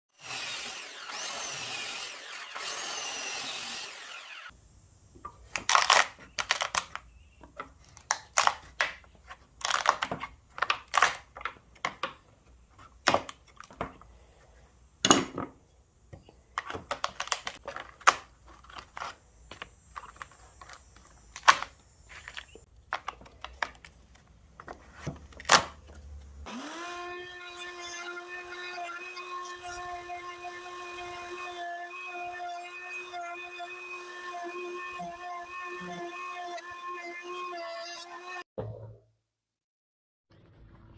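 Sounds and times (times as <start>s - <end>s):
wood snapping and cracking: 5.5s - 7.1s, 20.0s - 21.7s.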